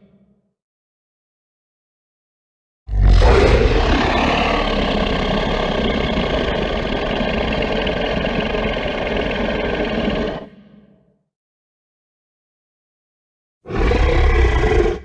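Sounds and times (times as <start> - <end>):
monster roar rumbling rush: 2.9 - 10.6, 13.7 - 15.0.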